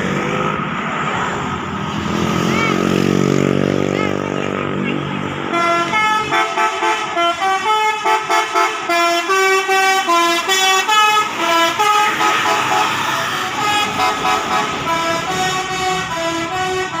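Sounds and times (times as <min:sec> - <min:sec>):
multi-tone air horn tune: 0:05.4 - 0:17.0.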